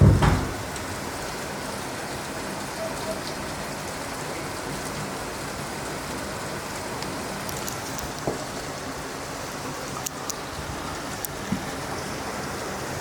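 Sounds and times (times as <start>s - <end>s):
faint drips and ticks: 0.0s - 13.0s
steady rain falling: 0.0s - 13.0s.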